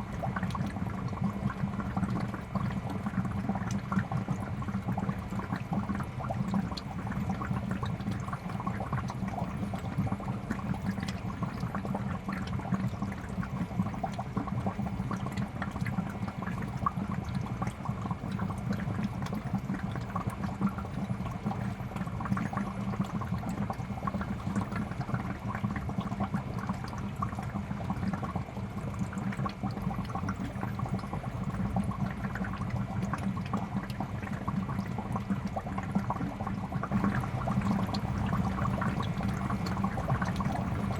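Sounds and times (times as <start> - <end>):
aquarium water bubbling: 0.0 - 40.9
low pump hum: 0.0 - 40.9.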